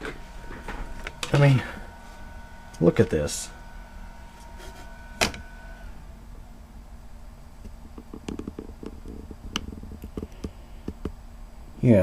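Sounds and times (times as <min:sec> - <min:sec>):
small clicks and taps of laptop parts: 0:08.0 - 0:11.2.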